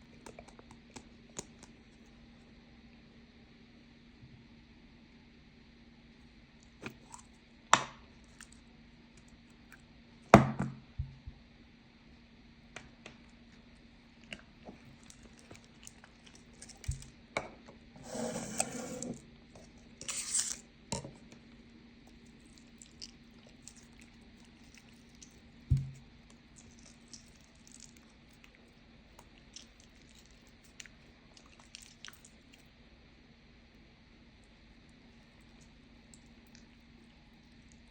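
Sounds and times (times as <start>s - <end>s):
short rustling or scraping: 18.0s - 19.2s.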